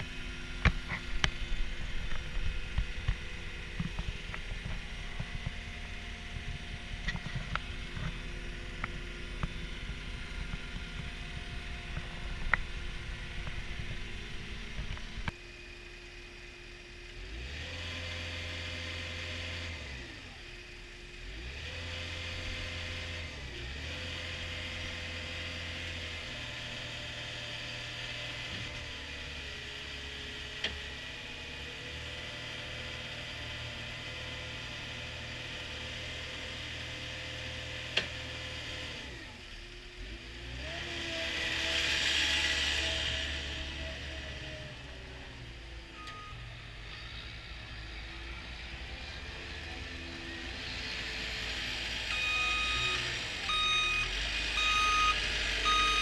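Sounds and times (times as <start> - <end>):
diesel engine revving: 0.0 - 56.0.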